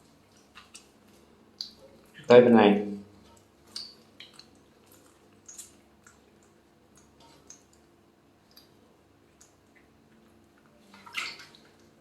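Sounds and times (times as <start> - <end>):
water drips and splashes: 3.2 - 12.0.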